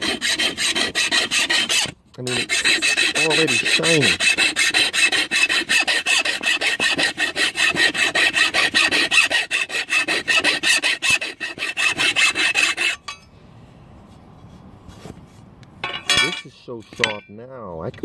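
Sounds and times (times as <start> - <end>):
metal file scraping steel blade: 0.0 - 13.3.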